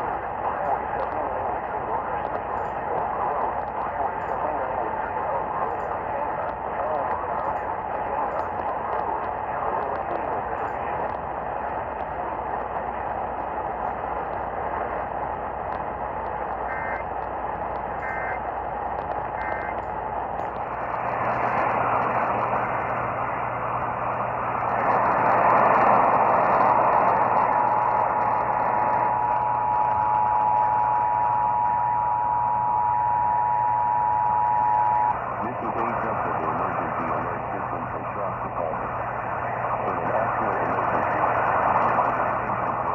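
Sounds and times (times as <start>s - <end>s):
radio static: 0.0s - 42.9s.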